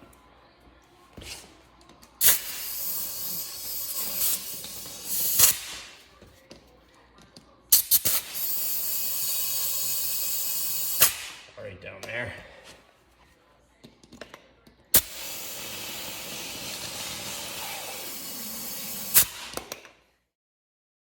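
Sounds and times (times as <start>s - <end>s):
compressed air hissing into tire: 2.2s - 6.0s, 7.7s - 11.5s, 15.0s - 19.6s.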